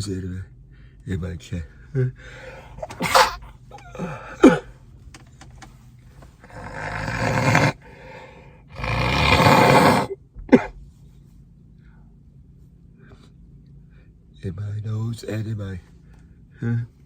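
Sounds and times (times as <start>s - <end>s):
short coughs: 2.6s - 4.8s, 10.4s - 10.9s
man blowing nose: 2.8s - 3.5s.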